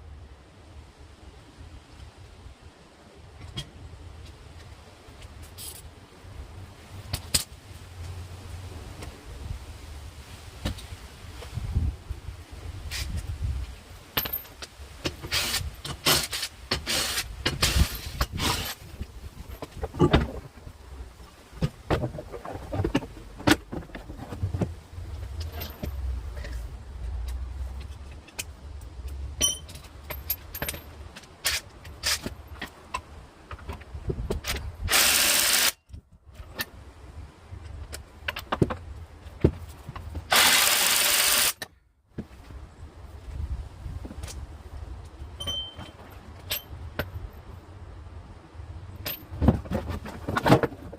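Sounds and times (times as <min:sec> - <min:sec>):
loud hiss bursts: 0:15.2 - 0:18.8, 0:34.9 - 0:35.8, 0:40.3 - 0:41.6
metal tools clinking on engine parts: 0:25.4 - 0:26.6, 0:29.4 - 0:32.7, 0:45.4 - 0:47.3, 0:49.0 - 0:49.4.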